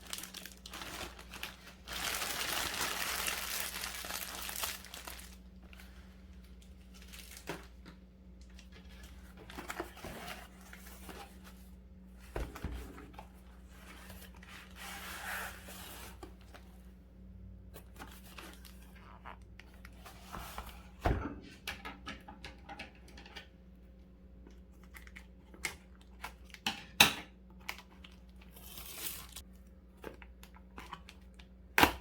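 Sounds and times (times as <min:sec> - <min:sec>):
packaging tearing and crinkling: 0:00.0 - 0:05.4, 0:06.9 - 0:07.7
packaging rustling: 0:00.0 - 0:11.6.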